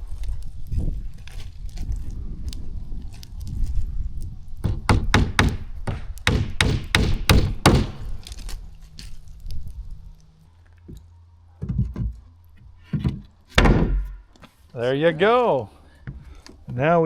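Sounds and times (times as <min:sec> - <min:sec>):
hammer knocking nails into wood: 0:04.6 - 0:08.1, 0:13.0 - 0:14.2.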